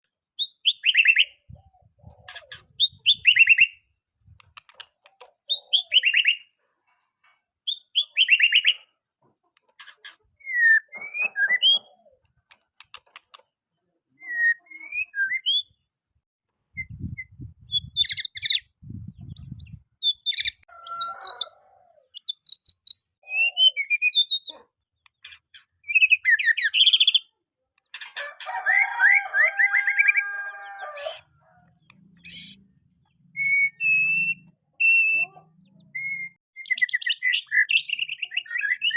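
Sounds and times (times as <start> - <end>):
bird singing chirps and whistles: 0.4 - 1.5, 2.4 - 3.9, 5.5 - 6.5, 7.6 - 8.9, 10.4 - 12.0, 14.2 - 15.8, 16.8 - 18.7, 19.3 - 20.6, 22.2 - 24.6, 25.8 - 27.3, 32.2 - 38.9.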